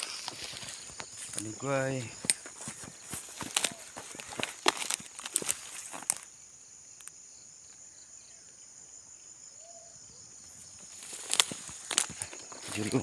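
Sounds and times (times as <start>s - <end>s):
footsteps clicking and tapping: 0.0s - 6.2s
crickets chirring: 0.0s - 13.0s.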